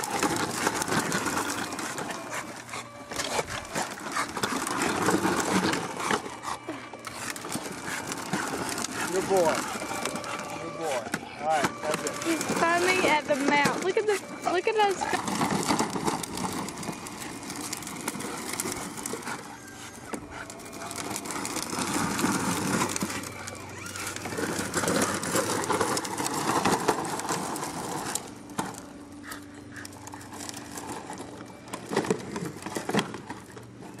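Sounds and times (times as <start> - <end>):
dog breathing heavily: 0.1 - 13.0, 15.0 - 26.3, 29.1 - 31.2.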